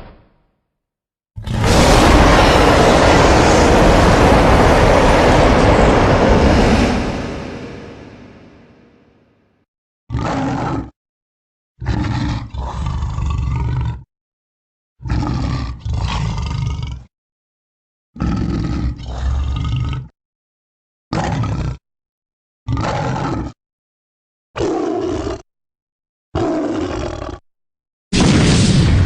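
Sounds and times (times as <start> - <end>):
monster growling roars: 1.4 - 8.8, 10.1 - 11.0, 11.8 - 14.1, 15.0 - 17.1, 18.2 - 20.1, 21.1 - 21.8, 22.7 - 23.6, 24.6 - 25.4, 26.4 - 27.4.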